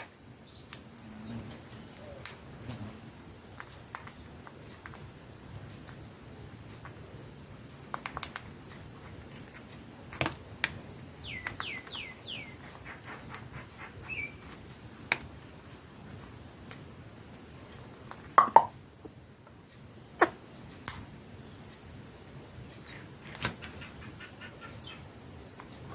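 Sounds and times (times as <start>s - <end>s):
parrot chirping: 11.2s - 14.5s, 22.8s - 25.1s.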